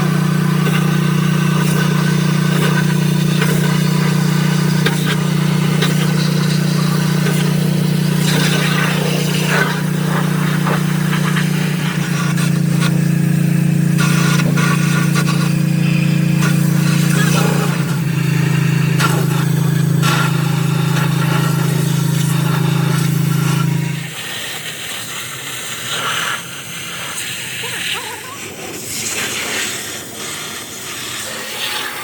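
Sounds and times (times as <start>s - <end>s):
machine humming: 0.0s - 24.6s.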